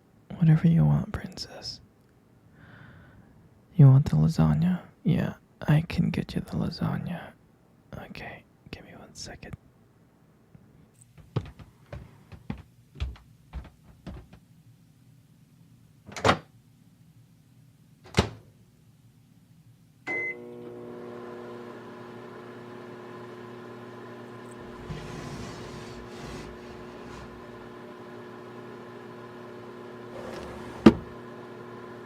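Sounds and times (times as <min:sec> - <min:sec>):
microwave oven humming: 0:20.0 - 0:32.0
microwave beep: 0:20.1 - 0:20.8.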